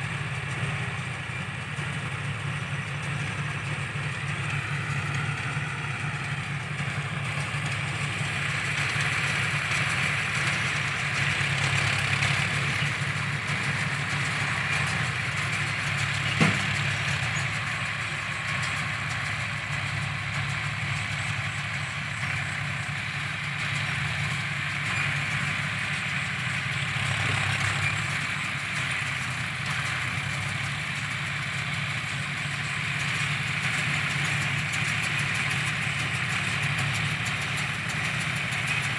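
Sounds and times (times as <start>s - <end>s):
tractor engine running: 0.0s - 38.9s.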